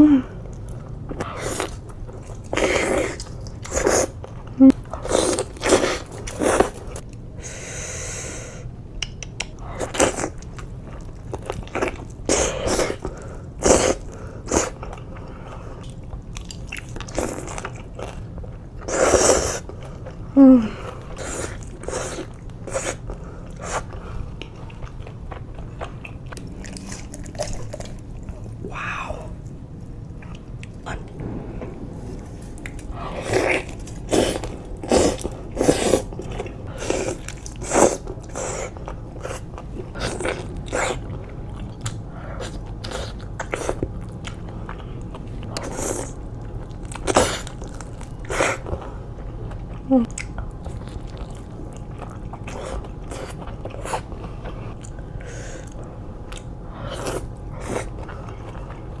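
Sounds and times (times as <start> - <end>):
crunchy chewing: 0.5 - 7.1, 20.8 - 29.5, 32.0 - 59.0
low hum: 22.4 - 59.0.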